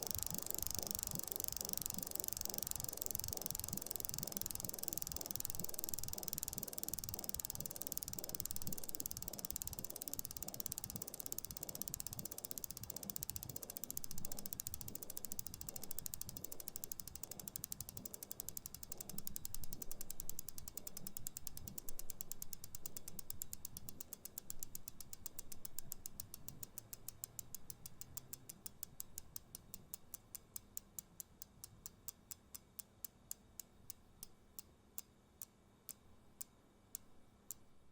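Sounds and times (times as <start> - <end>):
wheel whirring: 0.0 - 22.2
bicycle freewheel clicking: 0.0 - 29.4.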